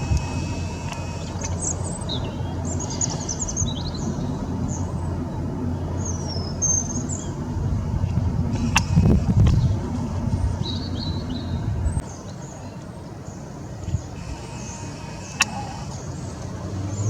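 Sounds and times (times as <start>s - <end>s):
low background rumble: 0.0s - 12.2s
small birds chirping: 0.0s - 17.0s.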